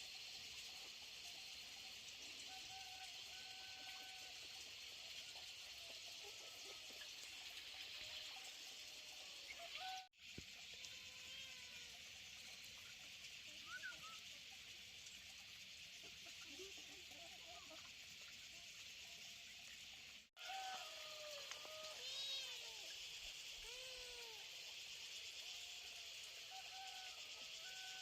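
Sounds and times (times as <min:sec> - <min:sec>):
steady hiss: 0:00.0 - 0:28.0.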